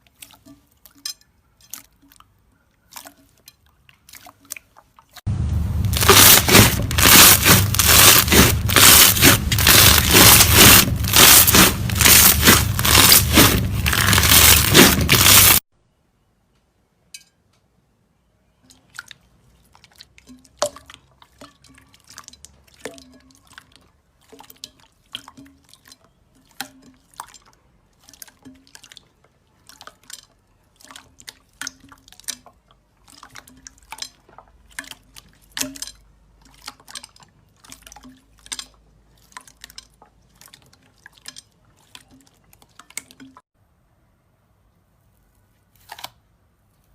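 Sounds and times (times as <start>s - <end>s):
slime squelching: 2.9s - 15.6s.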